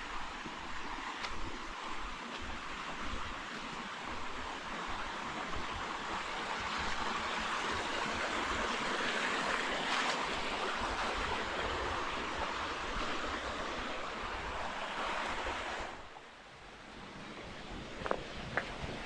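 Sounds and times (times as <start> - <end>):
rushing water noise: 0.0 - 19.0
wind rumble on microphone: 16.9 - 19.0.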